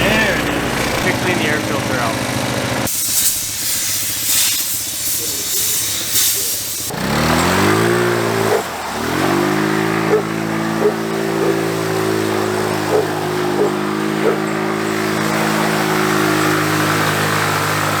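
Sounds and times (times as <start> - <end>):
small engine revving and idling: 0.0 - 18.0
compressed air hissing: 2.4 - 6.9.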